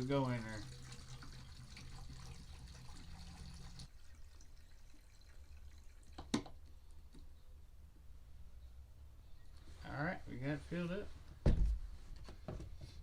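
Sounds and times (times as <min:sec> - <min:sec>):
fuel trickling into tank: 0:00.0 - 0:07.0.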